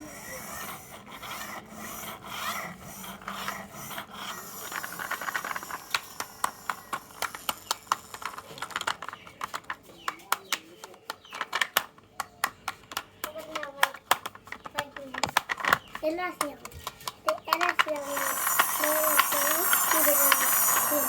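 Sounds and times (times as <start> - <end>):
marbles rolling on a track: 0.1 - 9.8, 17.3 - 21.0
marbles clicking together: 3.3 - 10.3, 16.3 - 21.0.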